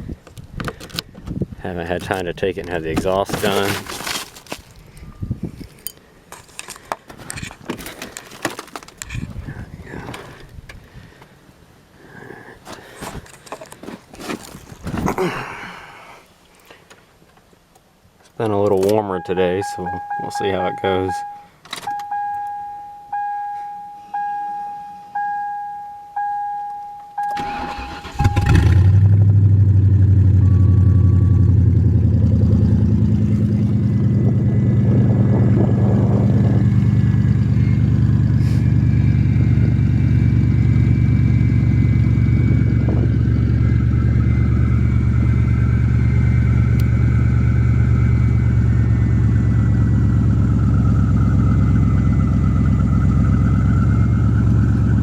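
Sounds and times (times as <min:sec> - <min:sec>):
dashboard warning chime: 0:19.0 - 0:28.9, 0:30.3 - 0:31.8
car engine cranking and running: 0:27.2 - 0:55.0.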